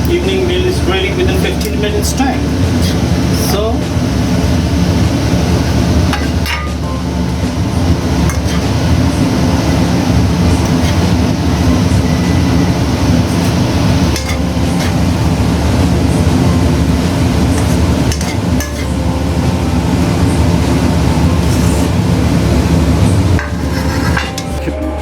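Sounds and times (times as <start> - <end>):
loud mechanical drone: 0.0 - 25.0
utensils clinking on dishes: 6.0 - 22.0, 22.7 - 24.9.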